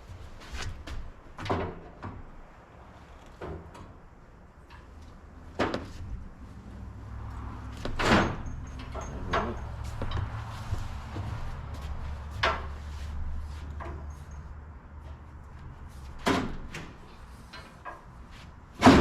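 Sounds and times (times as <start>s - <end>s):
metal knocks and clunks: 0.6s - 2.4s, 3.3s - 6.4s, 7.2s - 12.9s, 16.1s - 18.1s, 18.7s - 19.0s.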